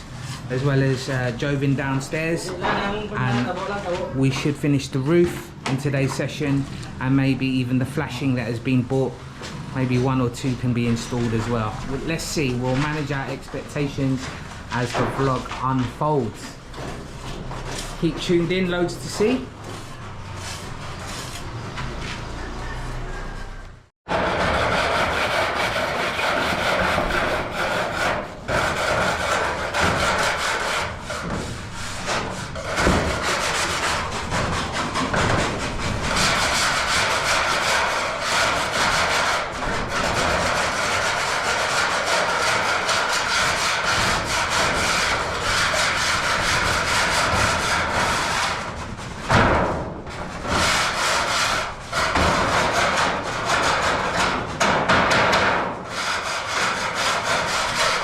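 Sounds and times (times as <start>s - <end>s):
hand tool scraping and rasping: 24.1s - 49.0s, 50.3s - 58.0s.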